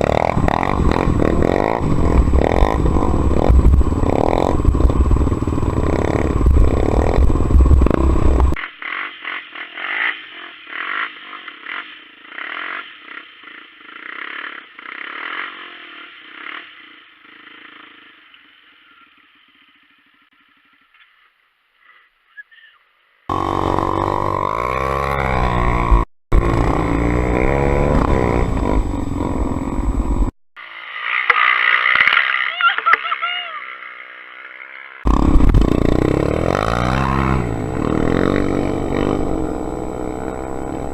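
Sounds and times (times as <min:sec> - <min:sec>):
dirt bike engine revving: 0:00.0 - 0:16.7, 0:23.3 - 0:30.4, 0:33.7 - 0:40.9.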